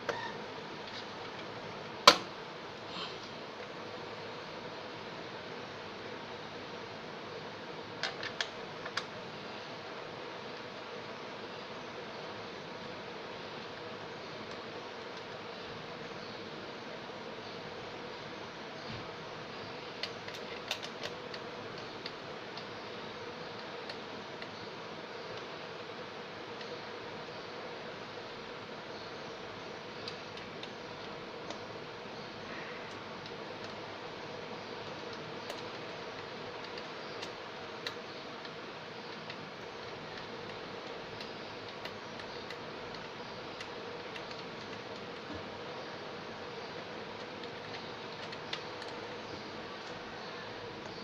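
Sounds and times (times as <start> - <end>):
faint hum: 0.0 - 51.0.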